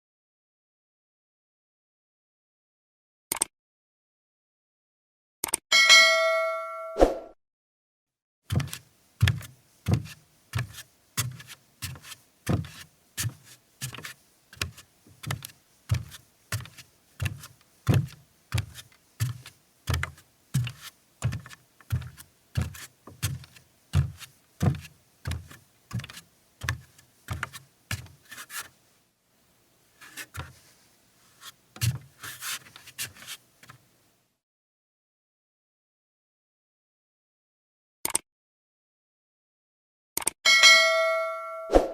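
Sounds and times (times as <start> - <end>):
footsteps on wooden floor: 8.5 - 28.1.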